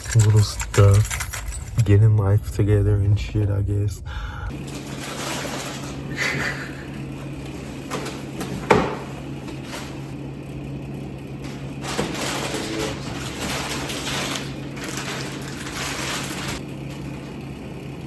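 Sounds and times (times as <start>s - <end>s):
steady low hum: 0.0s - 18.0s
door slamming shut: 8.6s - 9.1s.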